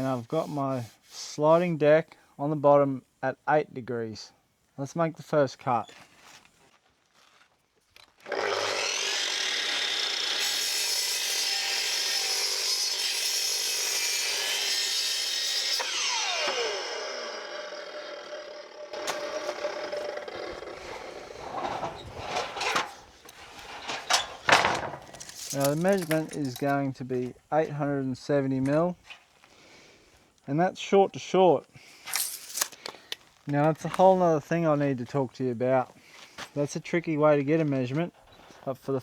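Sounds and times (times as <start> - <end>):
mitre saw cutting timber: 8.2 - 23.4
saw blade winding down whine: 8.3 - 22.0.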